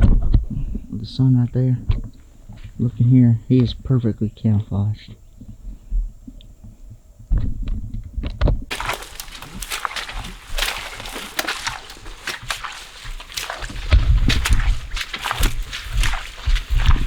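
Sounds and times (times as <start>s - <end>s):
footsteps through dry grass: 8.7s - 17.0s.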